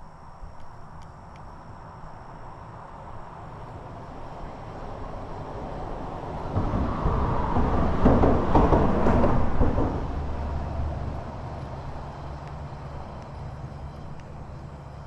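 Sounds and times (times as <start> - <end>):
low engine hum: 0.0 - 15.0
vehicle driving past: 3.7 - 15.0.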